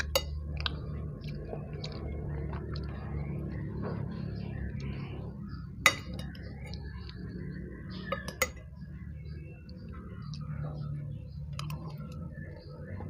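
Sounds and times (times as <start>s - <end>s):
low hum: 0.0s - 13.0s
utensils clinking against dish: 5.8s - 6.5s, 8.1s - 8.7s.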